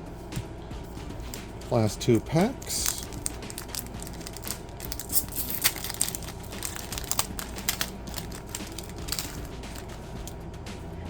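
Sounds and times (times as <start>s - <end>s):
wrapper crinkling and tearing: 2.2s - 10.4s.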